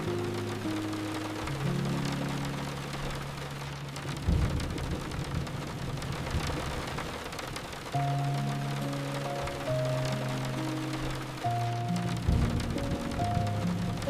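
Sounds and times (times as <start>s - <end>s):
soft sustained music notes: 0.0s - 7.2s, 7.9s - 14.0s
heavy rain falling: 0.0s - 14.0s
thunder rumble: 0.0s - 14.0s.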